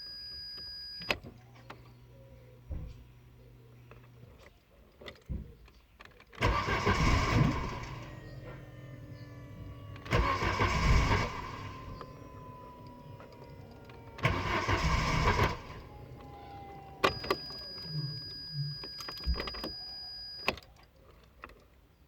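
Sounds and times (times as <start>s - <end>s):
car starter cranking: 6.2s - 20.8s.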